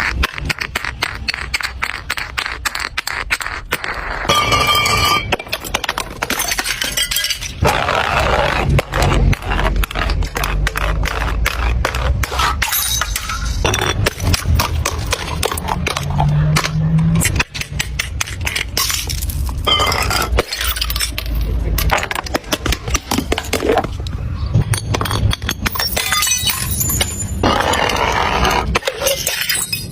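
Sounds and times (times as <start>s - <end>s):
glass shards clinking: 4.3s - 7.6s, 18.8s - 21.5s, 24.7s - 27.4s, 28.8s - 29.9s
glass bottles being crushed: 4.3s - 7.7s, 12.5s - 16.7s, 17.4s - 23.8s, 24.6s - 28.0s, 28.7s - 29.9s.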